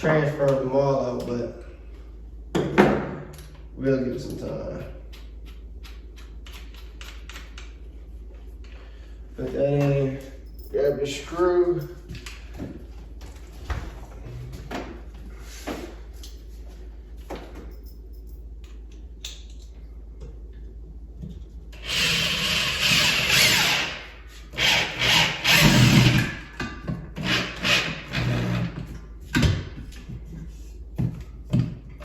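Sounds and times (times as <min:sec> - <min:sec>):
power drill driving screw into wood: 0:21.8 - 0:26.4, 0:27.2 - 0:28.7.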